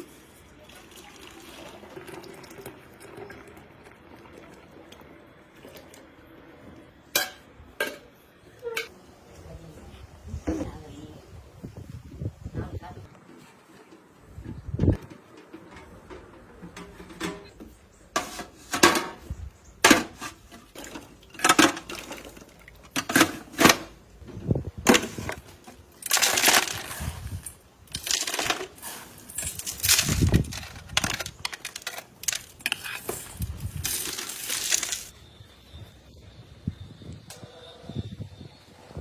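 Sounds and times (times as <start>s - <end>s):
hard objects clinking and knocking: 26.0s - 35.1s.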